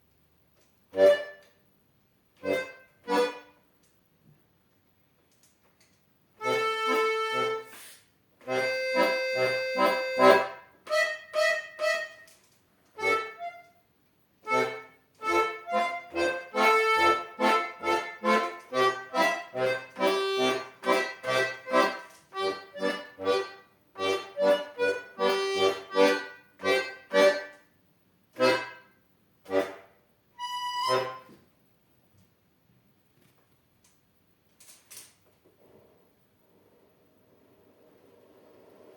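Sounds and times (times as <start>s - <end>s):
accordion playing lively piece: 0.9s - 1.5s, 2.4s - 3.6s, 6.4s - 12.3s, 13.0s - 13.8s, 14.4s - 27.7s, 28.4s - 31.4s.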